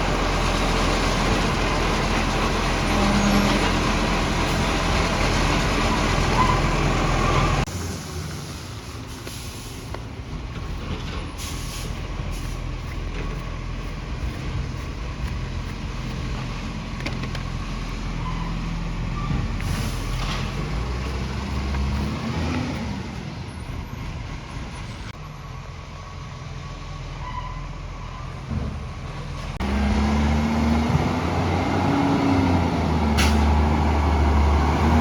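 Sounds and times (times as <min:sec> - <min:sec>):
diesel truck engine running: 0:00.0 - 0:35.0
air hissing: 0:08.8 - 0:10.2, 0:11.3 - 0:16.7, 0:19.5 - 0:22.2.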